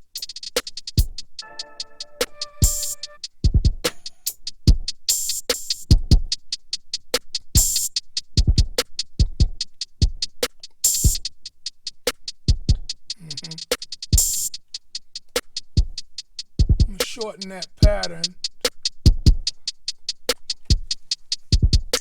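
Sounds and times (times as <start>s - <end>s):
fast hi-hat ticks: 0.0s - 1.8s, 2.7s - 22.0s
deep kick drum: 16.6s - 17.0s, 17.8s - 18.1s.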